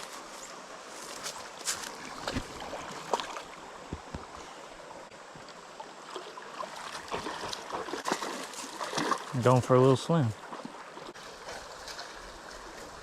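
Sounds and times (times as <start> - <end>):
creek water running: 0.0 - 13.0
water splashes and knocks: 1.8 - 4.5, 5.3 - 9.6.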